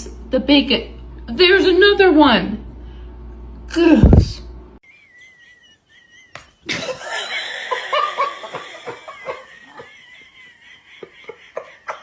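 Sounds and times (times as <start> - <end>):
people laughing: 4.9 - 12.0.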